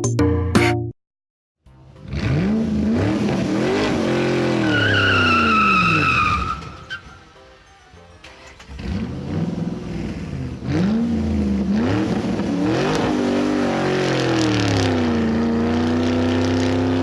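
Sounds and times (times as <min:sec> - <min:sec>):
music: 0:00.0 - 0:01.0, 0:01.6 - 0:02.2, 0:03.5 - 0:05.5, 0:06.4 - 0:09.4
car engine revving: 0:01.9 - 0:06.6, 0:08.4 - 0:17.0
tyres squealing: 0:04.3 - 0:07.3.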